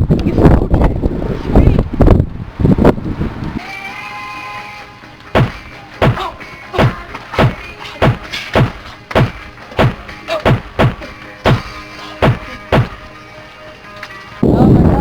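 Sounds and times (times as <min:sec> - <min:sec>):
kick-drum beat: 0:05.4 - 0:13.1.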